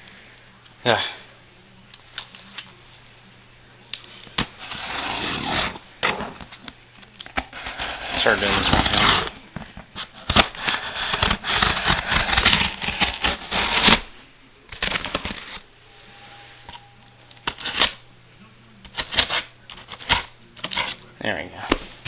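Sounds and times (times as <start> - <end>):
packaging rustling and scraping: 4.4 - 6.6, 7.2 - 14.1, 14.7 - 15.6, 17.4 - 18.0, 18.9 - 21.0.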